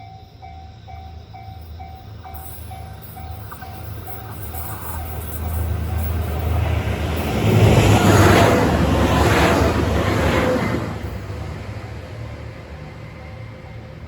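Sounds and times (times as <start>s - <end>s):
crossing bell dinging: 0.0s - 8.9s
diesel train passing: 0.0s - 14.0s.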